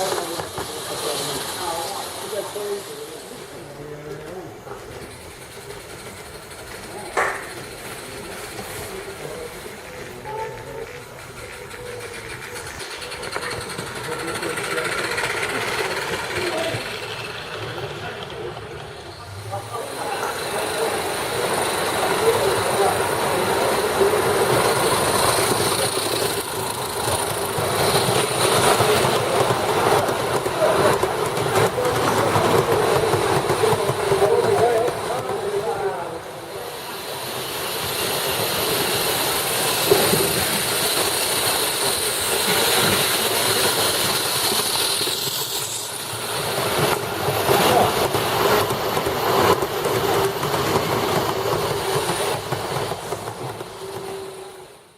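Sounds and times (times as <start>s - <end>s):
steam locomotive rumble and hiss: 0.0s - 54.9s
train rattling on rails: 0.0s - 54.9s.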